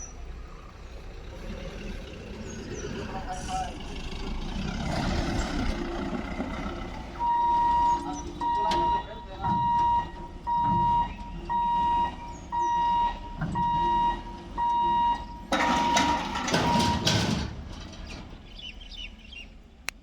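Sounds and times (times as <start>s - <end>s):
level crossing warning beeper: 7.1s - 17.6s.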